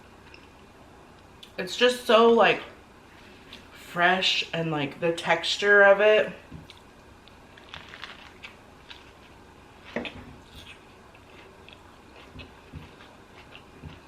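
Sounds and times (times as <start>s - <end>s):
person chewing wetly: 6.6s - 14.0s.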